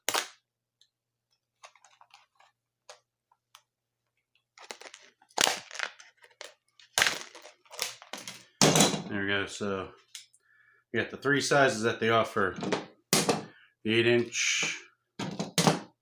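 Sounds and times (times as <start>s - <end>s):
packaging crinkling and rustling: 1.3s - 3.5s, 4.3s - 8.6s.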